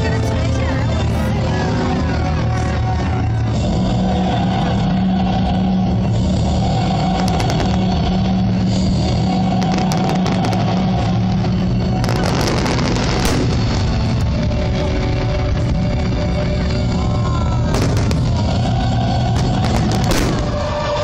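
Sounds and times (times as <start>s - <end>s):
sharp crackles: 6.7s - 21.0s.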